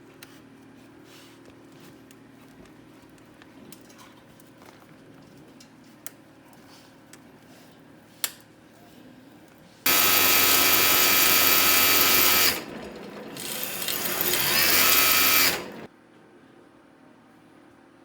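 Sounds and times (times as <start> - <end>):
electric motor and chain whining: 9.9 - 15.9.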